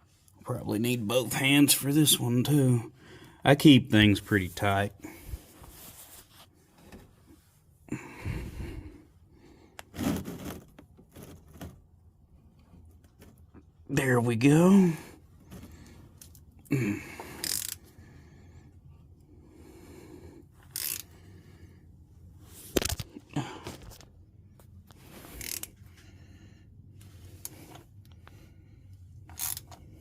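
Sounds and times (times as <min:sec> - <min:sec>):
wrench metal clicks and scrapes: 0:17.4 - 0:17.8, 0:20.6 - 0:21.2, 0:25.2 - 0:25.8, 0:29.2 - 0:29.8.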